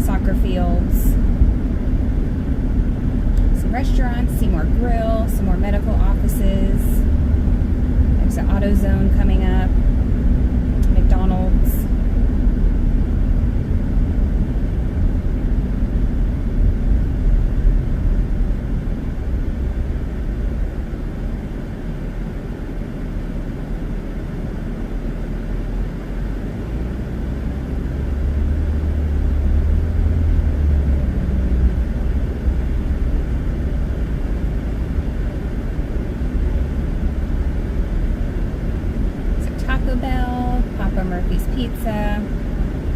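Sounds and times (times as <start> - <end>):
car road and engine rumble: 0.0 - 42.9.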